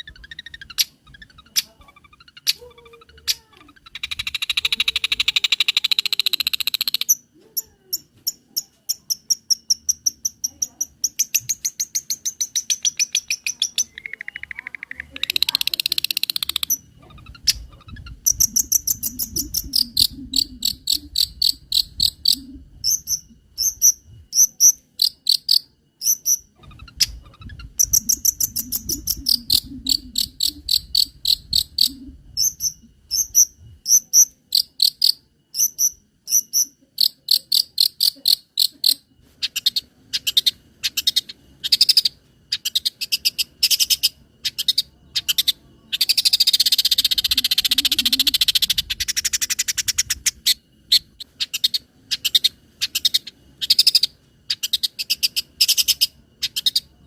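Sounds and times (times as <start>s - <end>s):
sharp high bird chirps: 0.0s - 7.3s, 8.0s - 57.0s
bird buzzy chatter: 0.0s - 57.0s
bird whistle: 18.3s - 24.0s.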